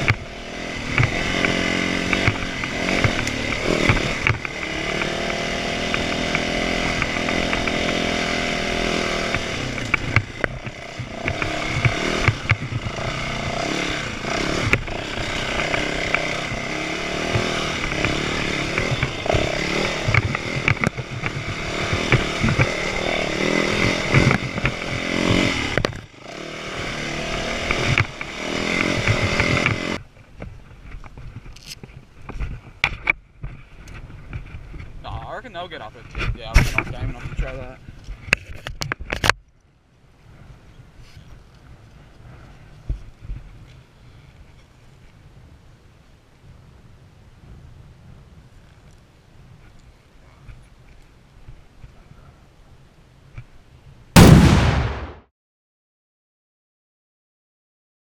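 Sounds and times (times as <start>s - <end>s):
small petrol engine revving: 0.0s - 30.0s.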